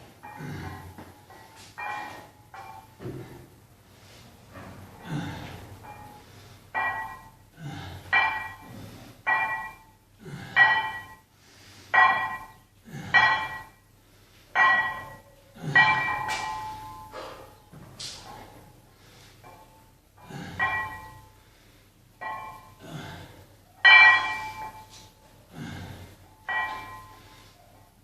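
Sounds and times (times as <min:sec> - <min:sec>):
metal gym weights clinking: 0:00.2 - 0:03.5, 0:05.8 - 0:11.2, 0:14.5 - 0:18.6, 0:19.4 - 0:21.3, 0:22.2 - 0:23.2, 0:23.8 - 0:25.2, 0:26.4 - 0:27.6.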